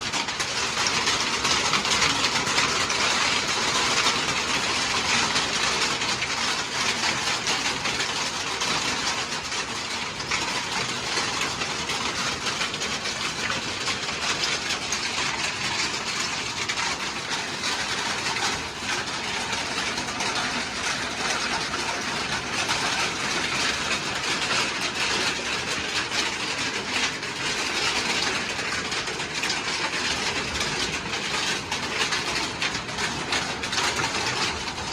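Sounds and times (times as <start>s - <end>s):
steady rain falling: 0.0s - 34.9s.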